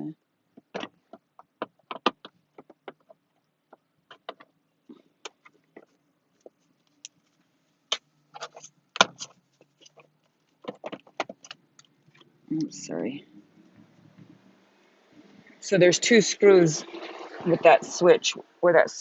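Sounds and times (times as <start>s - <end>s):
hands clicking on plastic cover: 0.6s - 4.5s, 7.9s - 11.9s.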